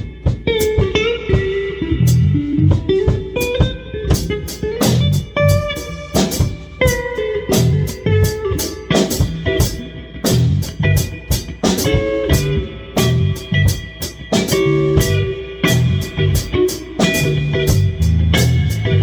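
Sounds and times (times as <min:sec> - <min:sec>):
drum kit beat: 0:00.0 - 0:19.0
electric guitar notes: 0:00.0 - 0:19.0
bass line: 0:01.8 - 0:02.9, 0:04.1 - 0:11.3, 0:11.9 - 0:19.0.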